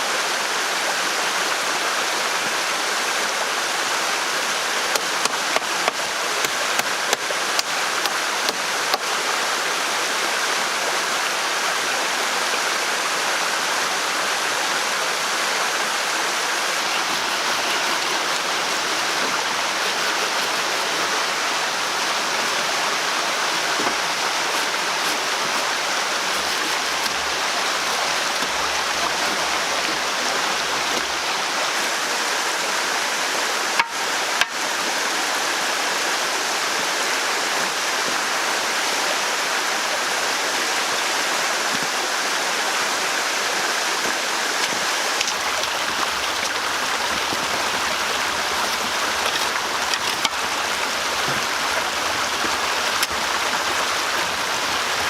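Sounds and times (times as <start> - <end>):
running water rushing: 0.0 - 55.0.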